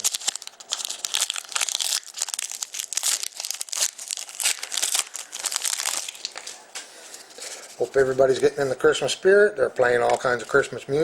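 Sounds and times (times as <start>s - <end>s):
card pack wrapper crinkling and tearing: 0.0s - 6.6s.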